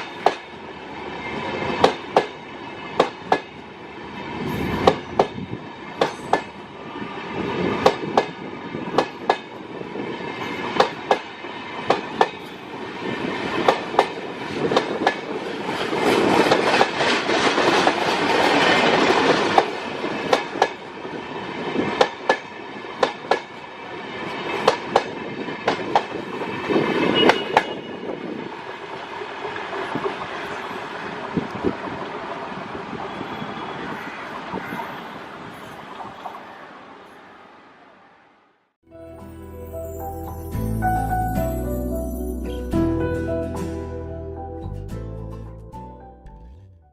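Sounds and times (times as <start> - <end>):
train wheels clicking over rail joints: 0.0 - 0.6, 1.7 - 3.7, 7.8 - 9.6, 24.5 - 27.8
train rumble: 0.0 - 36.6.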